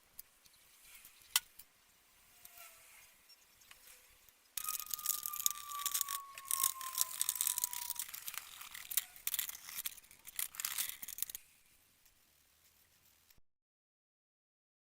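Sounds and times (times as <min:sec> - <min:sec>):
faint descending whine: 0:04.6 - 0:09.2
metallic mechanism clicking: 0:04.6 - 0:11.4.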